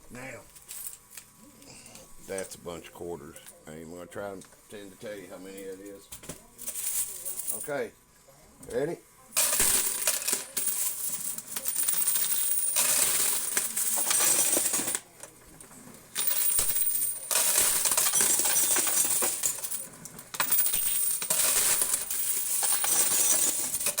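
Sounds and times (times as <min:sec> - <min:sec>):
coins pouring and clinking: 0:00.6 - 0:01.2, 0:06.6 - 0:07.7, 0:09.4 - 0:15.1, 0:16.1 - 0:24.0.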